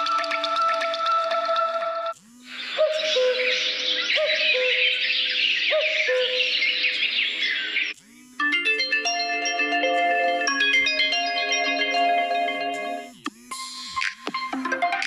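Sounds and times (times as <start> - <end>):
birdsong ringtone chirping: 2.6 - 13.1
melodic ringtone: 8.4 - 13.2, 14.3 - 15.0.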